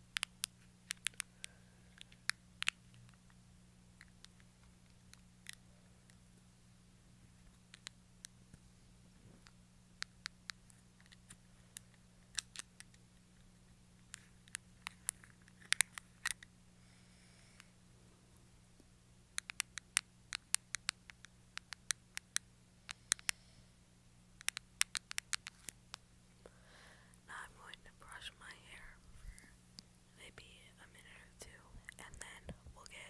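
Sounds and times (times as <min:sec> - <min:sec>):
hand clicks and pops: 0:00.1 - 0:03.2, 0:19.3 - 0:23.4, 0:24.4 - 0:26.0.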